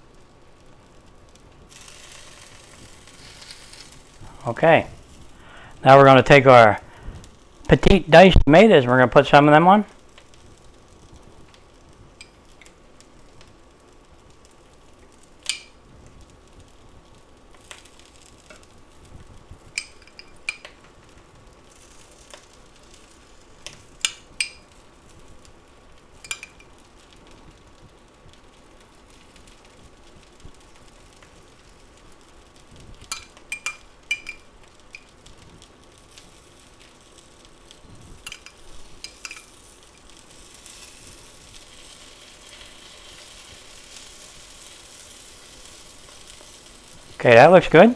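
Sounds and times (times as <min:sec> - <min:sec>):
food sizzling in a skillet: 0:00.0 - 0:08.4, 0:09.5 - 0:47.9
utensil clinking: 0:26.3 - 0:26.7, 0:33.1 - 0:34.4, 0:38.2 - 0:39.5.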